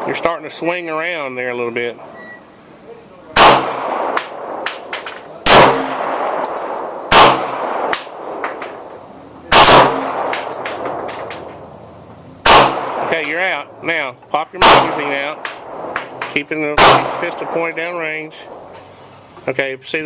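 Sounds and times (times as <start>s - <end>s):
pistol shots with ringing echo: 3.4s - 11.7s, 12.4s - 13.7s, 14.6s - 18.7s.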